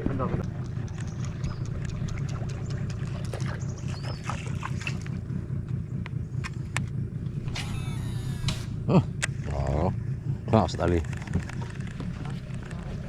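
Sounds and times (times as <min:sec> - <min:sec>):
steady low rumble: 0:00.0 - 0:13.0
sharp clicks: 0:00.4 - 0:03.5.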